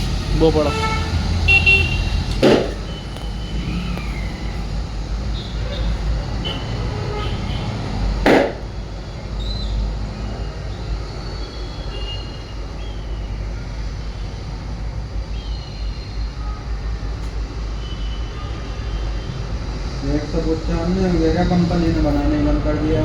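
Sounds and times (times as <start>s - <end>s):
traffic rumble: 0.0s - 23.0s
loud hiss-like burst: 1.5s - 9.1s.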